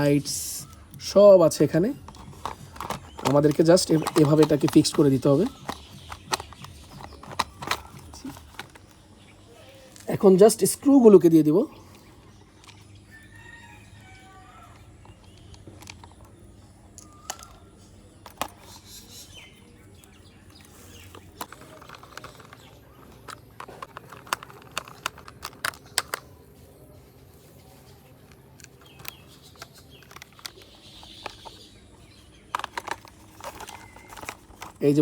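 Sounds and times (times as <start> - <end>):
screwdriver clicking on plastic: 2.0 - 9.0, 20.6 - 26.3, 28.2 - 31.7, 32.5 - 34.8.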